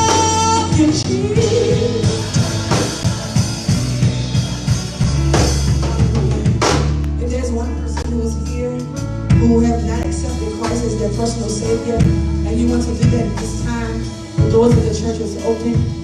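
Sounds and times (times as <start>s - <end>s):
bass and keyboard chords: 0.0s - 16.0s
drum kit fills: 0.0s - 16.0s.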